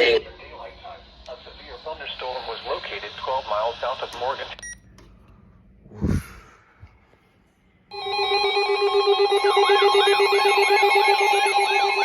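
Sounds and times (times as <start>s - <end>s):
low falling whoosh: 5.8s - 6.9s
warbling siren-like alert tone: 7.9s - 12.0s.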